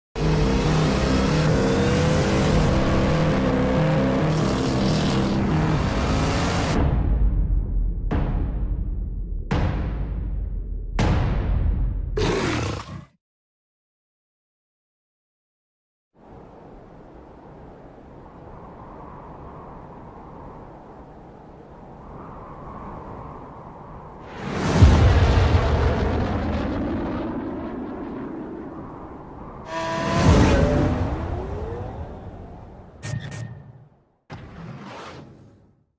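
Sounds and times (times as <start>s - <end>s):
sports car engine accelerating: 0.2s - 6.8s, 29.7s - 33.0s.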